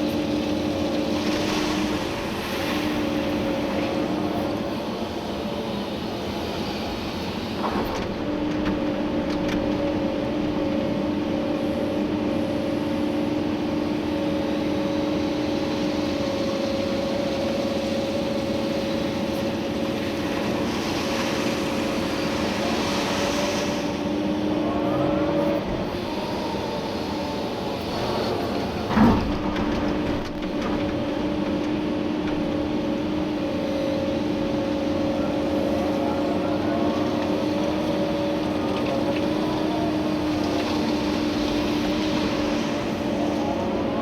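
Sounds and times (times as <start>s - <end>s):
excavator engine and hydraulic pumps: 0.0s - 44.0s.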